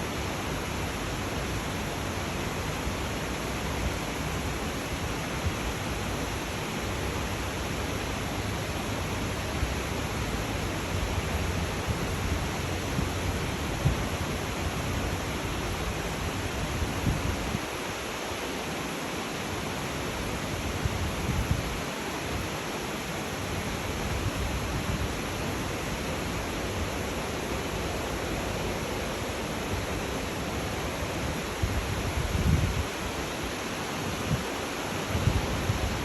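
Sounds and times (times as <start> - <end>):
steady rain falling: 0.0 - 36.0.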